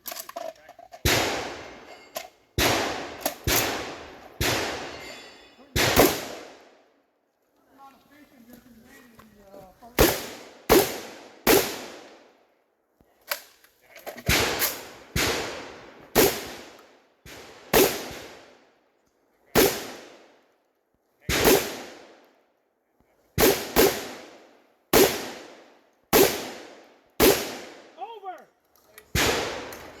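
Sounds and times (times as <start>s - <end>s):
shotgun shots echoing: 1.0s - 1.9s, 2.6s - 6.7s, 10.0s - 12.2s, 14.3s - 18.5s, 19.6s - 20.2s, 21.3s - 22.1s, 23.4s - 28.0s, 29.1s - 30.0s.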